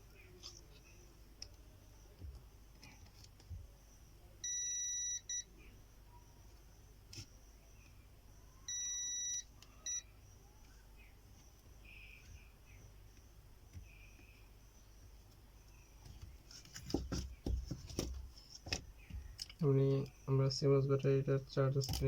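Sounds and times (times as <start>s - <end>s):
multimeter continuity beeps: 4.4s - 5.7s, 8.6s - 10.4s.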